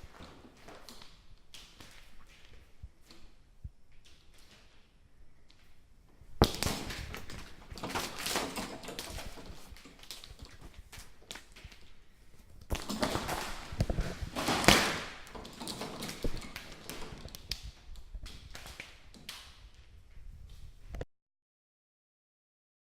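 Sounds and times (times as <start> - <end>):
plastic strip curtain rustling: 6.4 - 20.9.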